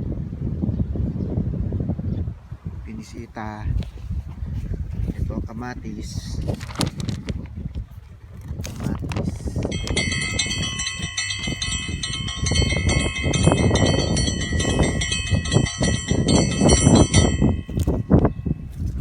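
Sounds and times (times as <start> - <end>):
wind buffeting microphone: 0.0 - 19.0
high-pitched multi-tone ringing: 9.7 - 18.8.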